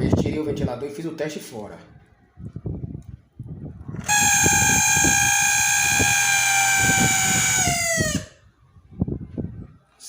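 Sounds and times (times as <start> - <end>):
fan whining: 2.6 - 9.7.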